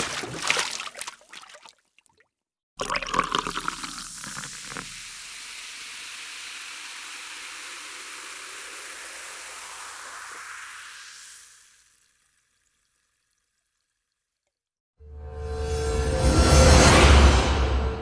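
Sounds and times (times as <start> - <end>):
splashing liquid: 0.0 - 5.2.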